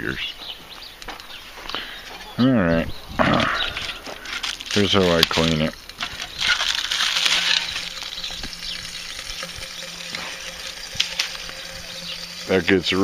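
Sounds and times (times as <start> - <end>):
hot grease sizzling: 4.2 - 13.0.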